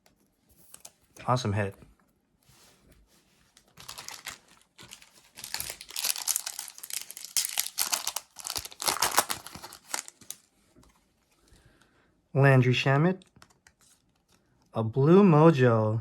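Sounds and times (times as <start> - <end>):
foil wrapper crinkling and tearing: 3.6 - 10.5.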